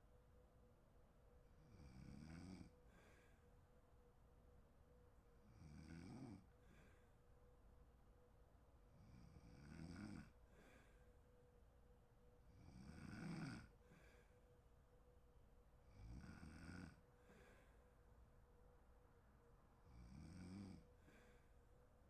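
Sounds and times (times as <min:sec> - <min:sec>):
faint steady hum: 0:00.0 - 0:22.0
woman snoring: 0:01.7 - 0:02.7, 0:05.5 - 0:06.5, 0:09.0 - 0:10.4, 0:12.6 - 0:13.7, 0:15.9 - 0:17.0, 0:19.9 - 0:20.9.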